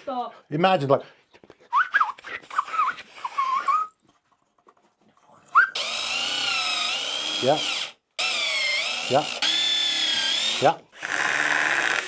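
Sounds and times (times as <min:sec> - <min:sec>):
power drill running: 0:05.8 - 0:12.0.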